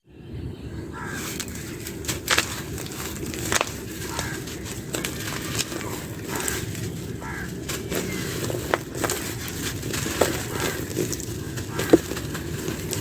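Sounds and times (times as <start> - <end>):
dry clay crumbling and crunching: 1.2 - 13.0
sharp cracks: 1.2 - 13.0.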